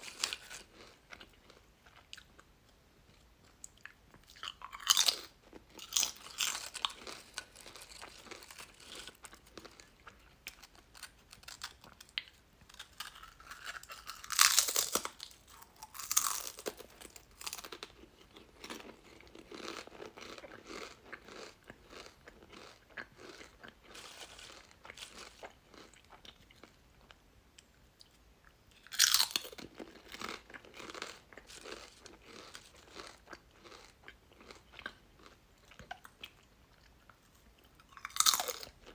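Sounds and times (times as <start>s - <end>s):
chewing crunches: 3.1s - 27.2s, 28.8s - 38.9s
loud bites into crunchy chips: 4.4s - 9.9s, 10.6s - 18.0s, 28.9s - 34.6s, 37.9s - 38.7s.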